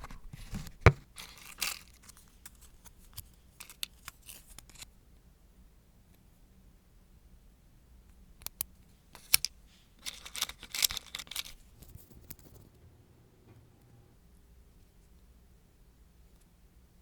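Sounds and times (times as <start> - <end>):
scratchy crackly rustling: 10.0 - 12.8.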